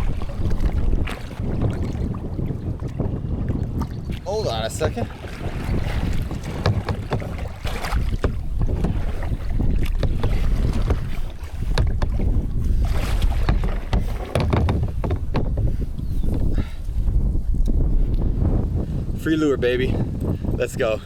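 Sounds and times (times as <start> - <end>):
handling knocks in kayak: 0.0 - 4.2, 5.1 - 17.7
wind buffeting microphone: 0.0 - 21.0.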